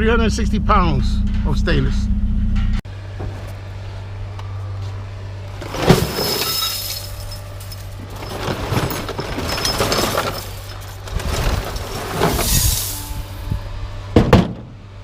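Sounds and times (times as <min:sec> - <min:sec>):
low engine hum: 0:00.0 - 0:15.0
scrap metal crashing onto pile: 0:05.6 - 0:13.4.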